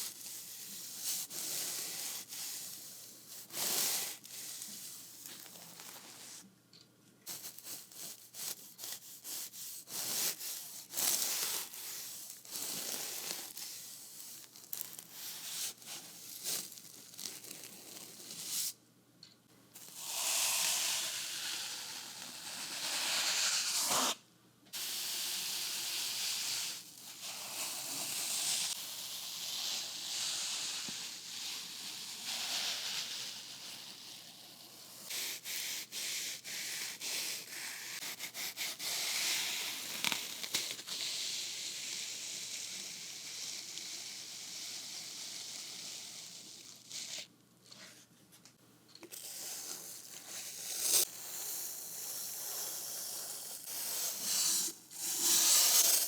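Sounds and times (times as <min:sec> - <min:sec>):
paint brush strokes on wood: 0:07.3 - 0:14.4.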